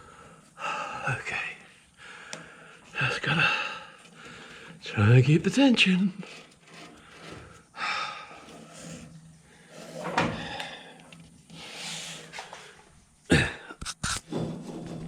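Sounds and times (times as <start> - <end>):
scrapes and rubs of handling: 3.9 - 13.0, 13.8 - 15.0.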